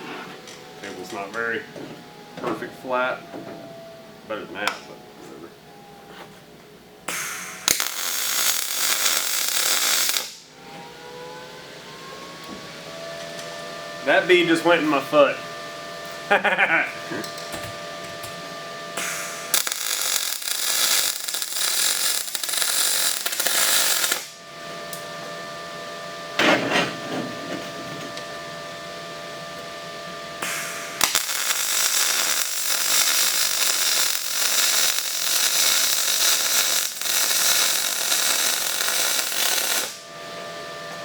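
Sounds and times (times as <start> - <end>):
welder humming: 7.0 - 41.0
welding arc crackling and hissing: 7.1 - 10.5, 19.0 - 24.4, 30.4 - 40.1.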